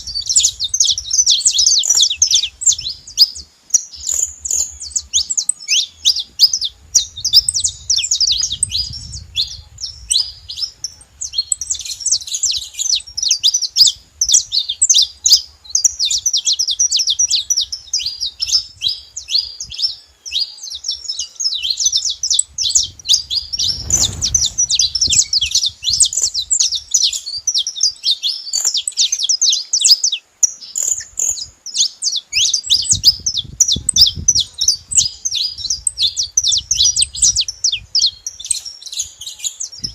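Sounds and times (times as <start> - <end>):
finches chirping and trilling: 0.0 - 39.9.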